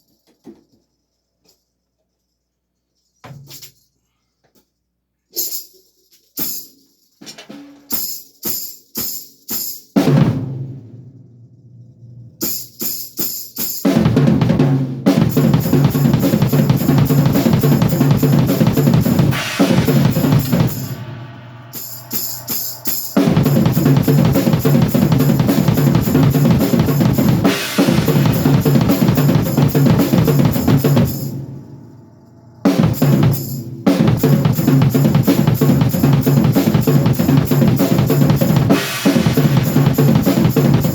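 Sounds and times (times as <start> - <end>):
drum kit played solo: 10.0 - 11.2, 12.4 - 31.8, 32.6 - 40.9.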